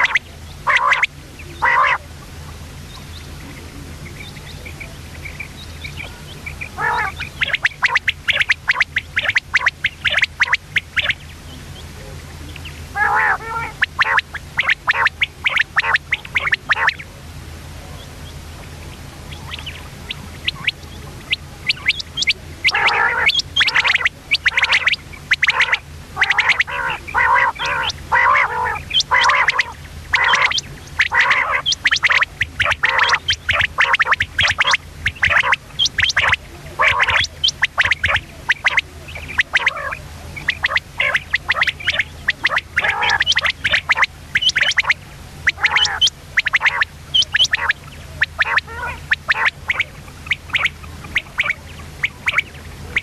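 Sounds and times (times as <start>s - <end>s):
quail calling: 0.0s - 2.2s, 2.9s - 17.1s, 18.0s - 53.0s.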